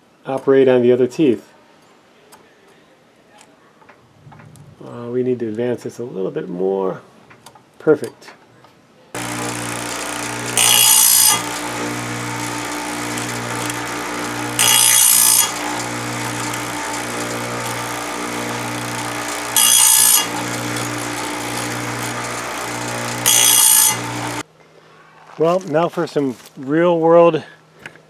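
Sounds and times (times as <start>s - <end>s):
grinding wheel on chain tooth: 9.2s - 24.4s
sharpener motor hum: 9.2s - 24.4s.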